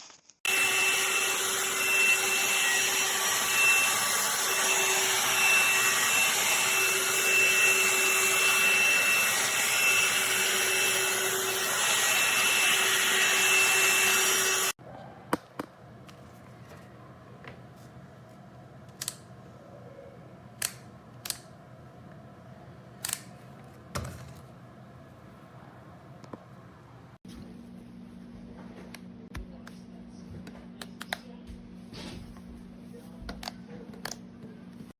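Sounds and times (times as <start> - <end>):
hair dryer running: 0.5 - 14.8.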